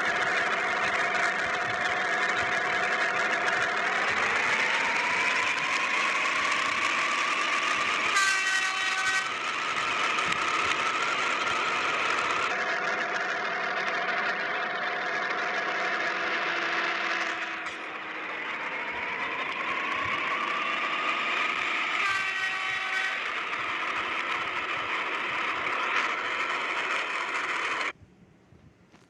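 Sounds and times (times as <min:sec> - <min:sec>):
heavy vehicle engine running: 0:00.0 - 0:28.0
rising engine whine: 0:00.0 - 0:28.0
vehicle horn: 0:08.1 - 0:09.3, 0:21.9 - 0:23.3.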